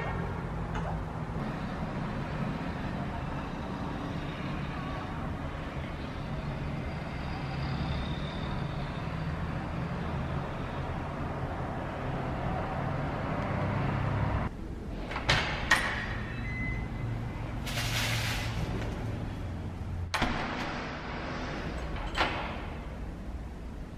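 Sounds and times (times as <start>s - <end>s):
vehicle engine rumble: 0.0s - 20.2s.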